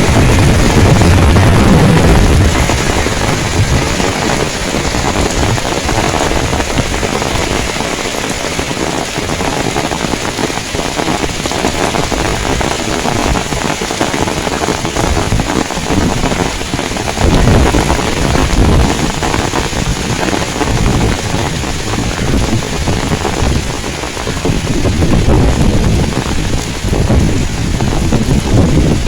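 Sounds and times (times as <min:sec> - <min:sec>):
heavy rain pouring: 0:00.0 - 0:29.0
wind buffeting microphone: 0:00.0 - 0:29.0.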